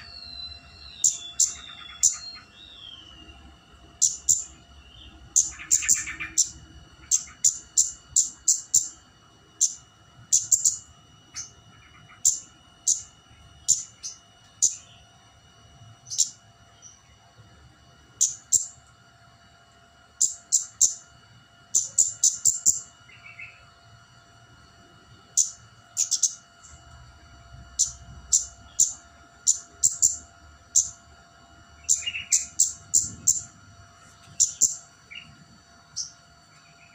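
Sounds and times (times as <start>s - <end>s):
bird calling high cit notes: 0.0s - 8.9s.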